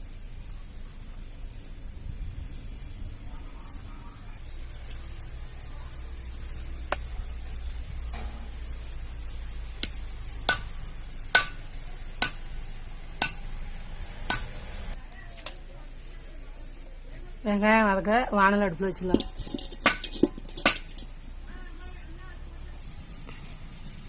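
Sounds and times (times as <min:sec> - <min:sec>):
birds chirping: 0:00.0 - 0:24.0
knife chopping on a board: 0:09.8 - 0:10.7, 0:11.3 - 0:11.6, 0:12.2 - 0:12.4, 0:13.2 - 0:13.4.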